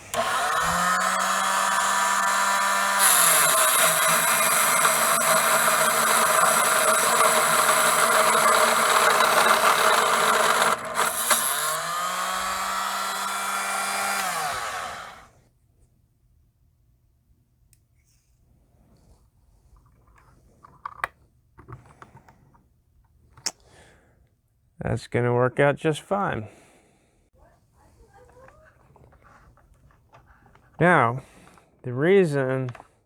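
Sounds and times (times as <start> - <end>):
metal cutting noise: 0.0 - 15.3
power tool motor running: 0.0 - 15.3.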